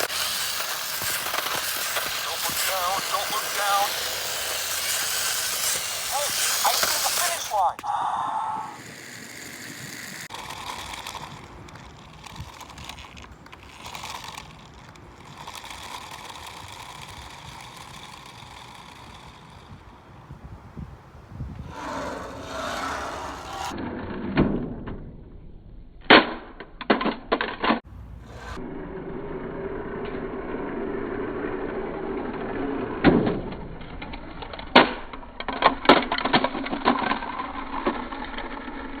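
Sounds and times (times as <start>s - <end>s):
sharp clicks and knocks: 26.0s - 27.8s.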